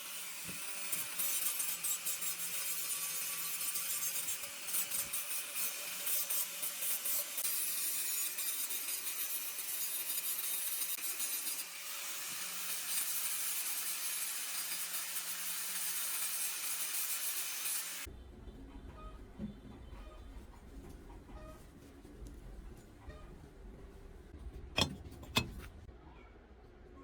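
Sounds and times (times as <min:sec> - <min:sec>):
welding arc frying hiss: 0:00.0 - 0:18.1.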